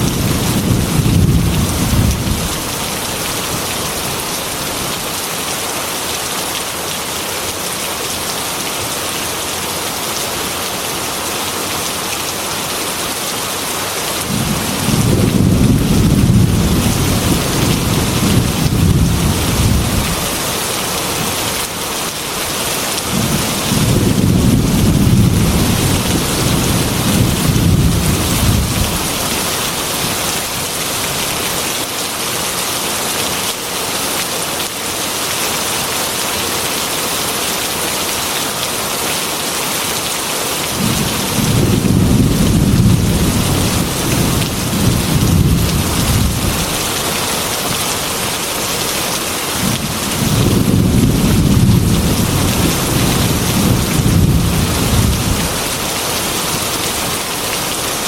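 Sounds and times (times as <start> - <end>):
low rolling thunder: 0.0 - 2.7, 14.3 - 20.4, 23.1 - 29.3, 40.8 - 46.8, 49.6 - 55.6
heavy rain on glass window: 0.0 - 58.0.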